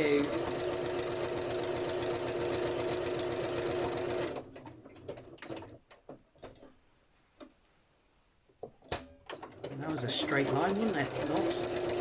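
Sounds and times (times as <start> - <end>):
sewing machine stitching: 0.0 - 5.8, 8.9 - 12.0.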